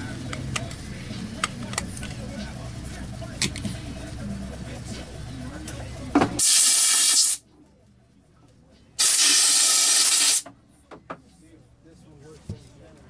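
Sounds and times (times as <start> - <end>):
compressed air hissing: 6.4 - 7.4, 9.0 - 10.4.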